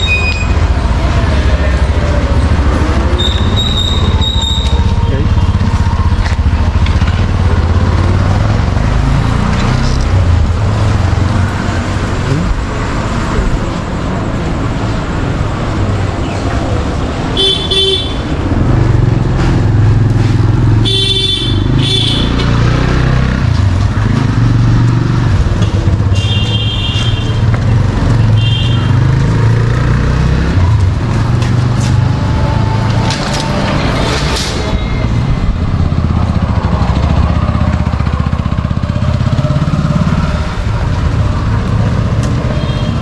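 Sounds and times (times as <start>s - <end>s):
vehicle engines running: 0.0s - 43.0s
car horns honking: 3.0s - 5.7s, 17.3s - 18.5s, 20.8s - 22.5s, 26.0s - 27.5s, 28.1s - 29.1s.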